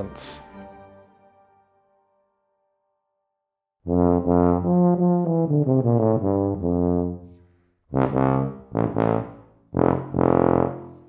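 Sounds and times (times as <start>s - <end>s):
tuba playing notes: 3.8s - 11.0s.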